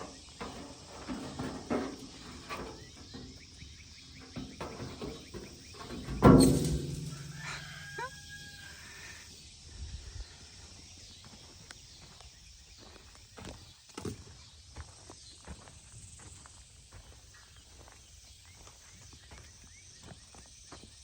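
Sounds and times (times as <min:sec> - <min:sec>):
chickens calling: 0:02.6 - 0:09.3
rooster crowing: 0:07.0 - 0:09.2.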